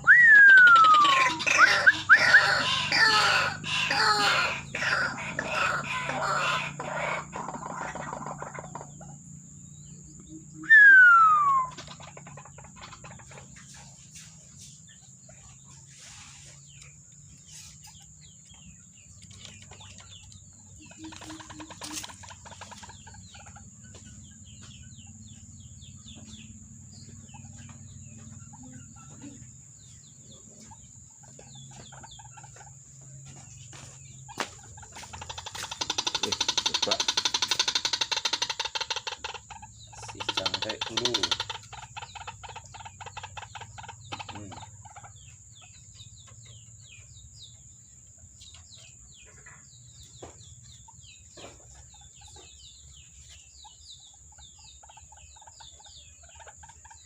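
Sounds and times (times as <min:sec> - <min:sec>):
waterhen clucking calls: 0:00.0 - 0:09.4, 0:10.1 - 0:57.0
loud falling whistle: 0:10.6 - 0:11.8.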